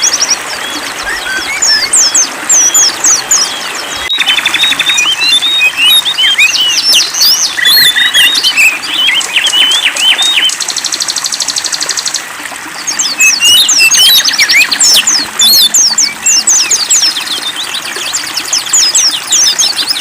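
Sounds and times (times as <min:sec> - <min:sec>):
songbird chirping and whistling: 0:00.0 - 0:10.6, 0:12.9 - 0:20.0.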